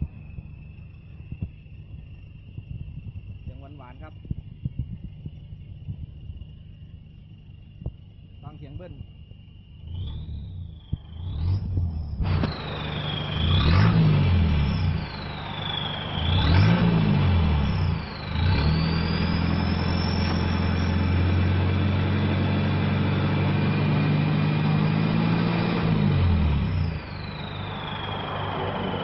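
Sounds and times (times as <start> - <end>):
turbo whistle: 9.8 - 21.8, 24.6 - 29.0
engine revving: 9.8 - 29.0.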